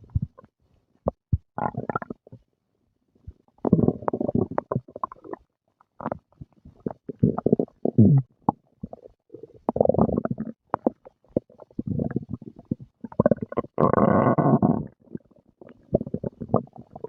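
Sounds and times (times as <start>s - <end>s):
stomach gurgling and growling: 0.0s - 2.5s, 3.2s - 17.0s.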